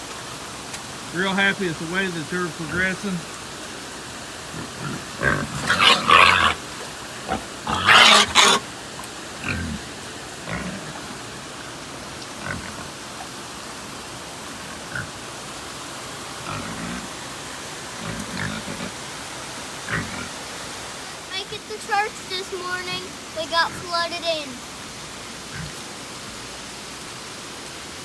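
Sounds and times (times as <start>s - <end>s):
rain hiss: 0.0s - 28.0s
hogs grunting: 1.2s - 3.3s, 4.3s - 13.4s, 14.5s - 15.3s, 16.4s - 17.3s, 17.9s - 19.2s, 19.8s - 20.4s, 23.4s - 24.0s, 25.5s - 25.8s
hogs squealing: 4.3s - 11.7s, 12.3s - 13.3s, 14.5s - 15.2s, 16.4s - 17.2s, 18.0s - 19.0s, 19.9s - 20.4s.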